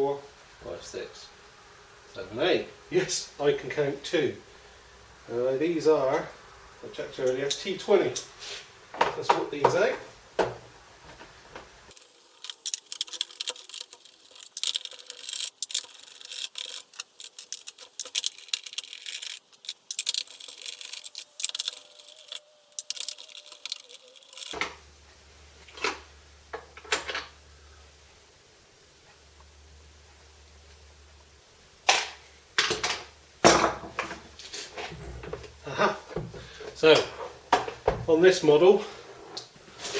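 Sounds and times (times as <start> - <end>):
clicks and scrapes of screws: 11.9 - 24.6.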